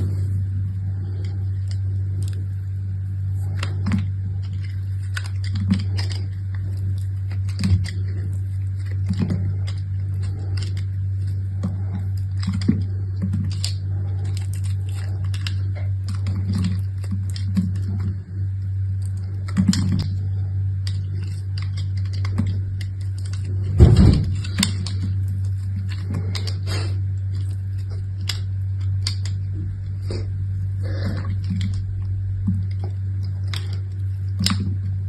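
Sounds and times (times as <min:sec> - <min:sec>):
steady low hum: 0:00.0 - 0:35.0
packaging crinkling: 0:03.3 - 0:20.2.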